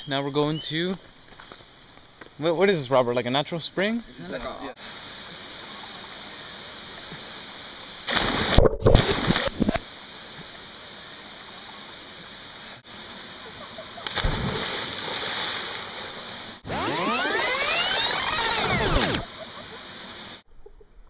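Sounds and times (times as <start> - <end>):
loud water splash: 8.1 - 9.7, 14.0 - 16.2.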